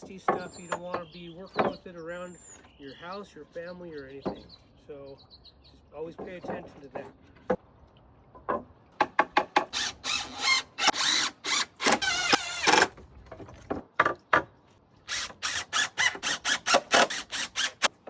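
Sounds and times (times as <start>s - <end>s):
power drill driving screws: 9.7s - 12.9s, 15.1s - 17.9s.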